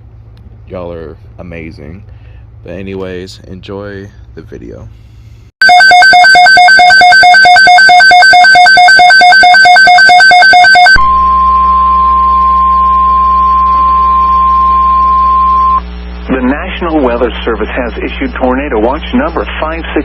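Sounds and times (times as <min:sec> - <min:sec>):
fast electronic beeping: 0:05.6 - 0:11.0
steady alarm tone: 0:05.6 - 0:16.1.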